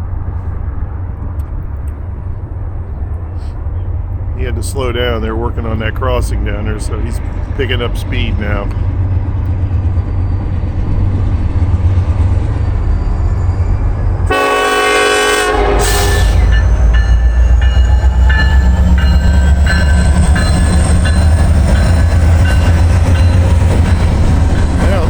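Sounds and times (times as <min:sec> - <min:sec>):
low rumble of passing train: 0:00.0 - 0:25.0
train horn blast: 0:14.3 - 0:17.4.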